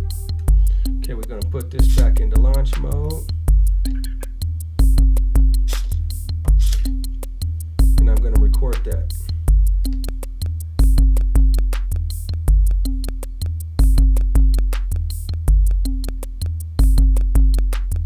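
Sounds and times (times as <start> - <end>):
deep bass kicks: 0.0 - 18.0
hi-hat ticks: 0.0 - 18.0
snare-like hits: 5.7 - 6.9.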